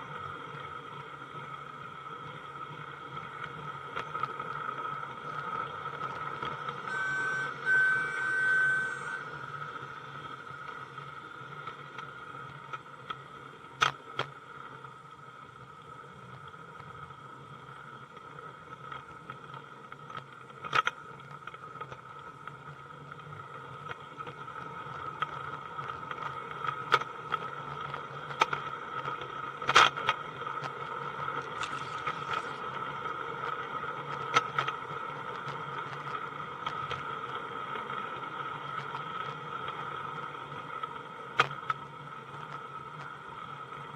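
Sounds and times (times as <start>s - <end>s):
model train whine: 5.3s - 12.8s, 31.4s - 33.9s.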